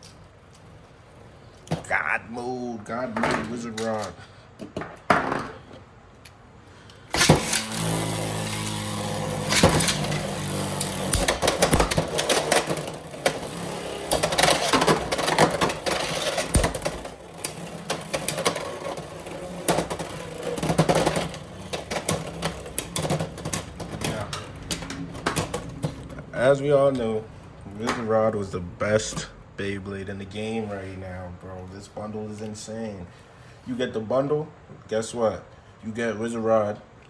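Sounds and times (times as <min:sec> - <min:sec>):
tops clattering together: 0:06.9 - 0:26.2
spinning top launcher rip: 0:07.1 - 0:23.0
spinning tops whirring: 0:07.1 - 0:25.7.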